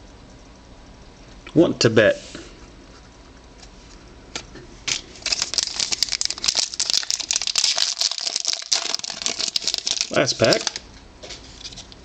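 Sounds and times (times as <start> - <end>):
wrapper crinkling and tearing: 4.9 - 10.8.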